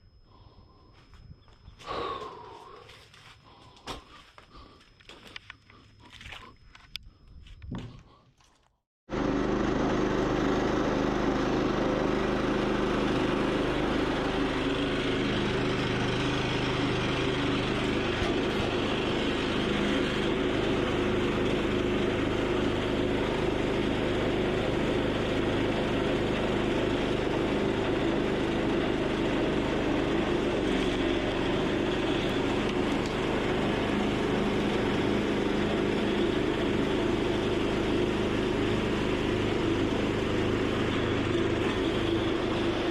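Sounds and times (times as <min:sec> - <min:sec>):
vehicle engine running: 0:09.1 - 0:42.9.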